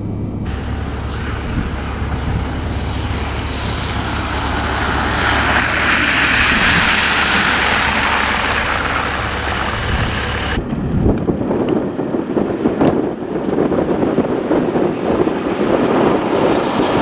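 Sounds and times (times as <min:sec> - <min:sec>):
road and engine drone: 0:00.0 - 0:17.0
tyre hiss on snow: 0:00.5 - 0:10.6.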